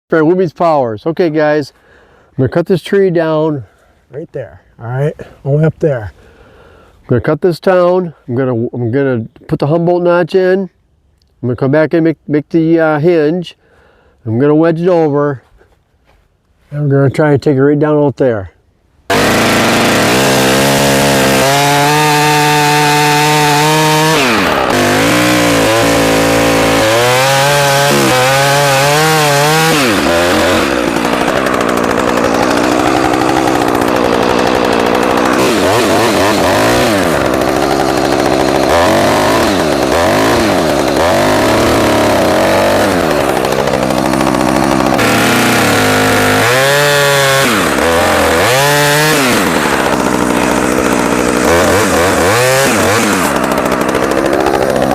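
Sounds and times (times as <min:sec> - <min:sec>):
chainsaw cutting into tree trunk: 0:19.1 - 0:54.9.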